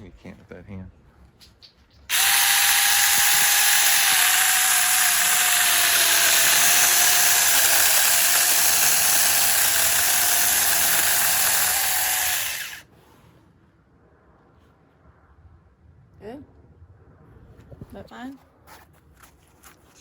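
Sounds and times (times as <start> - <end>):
cordless chainsaw cutting limb: 2.1 - 12.8.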